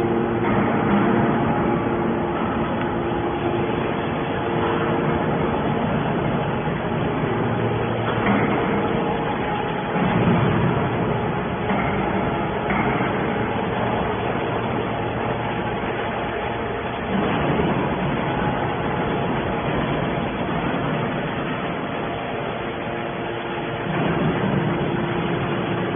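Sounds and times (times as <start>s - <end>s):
scrap metal baler running: 0.0s - 25.9s.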